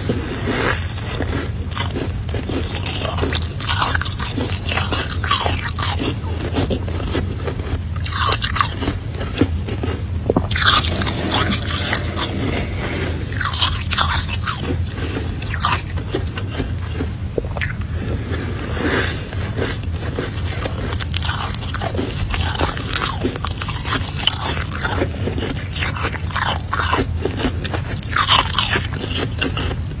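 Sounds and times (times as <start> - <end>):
crunchy chewing of frost: 0.0 - 30.0
low hum: 7.2 - 20.0.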